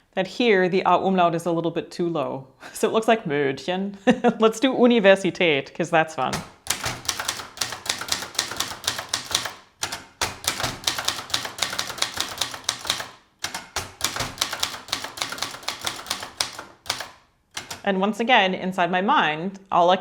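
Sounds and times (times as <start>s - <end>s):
manual typewriter keys striking: 6.2s - 18.0s.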